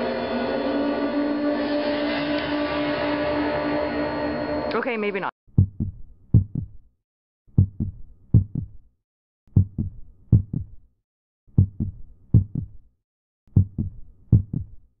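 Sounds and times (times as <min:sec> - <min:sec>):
heartbeat-like double thuds: 0:05.5 - 0:06.8, 0:07.5 - 0:08.8, 0:09.5 - 0:10.8, 0:11.6 - 0:12.8, 0:13.5 - 0:14.8.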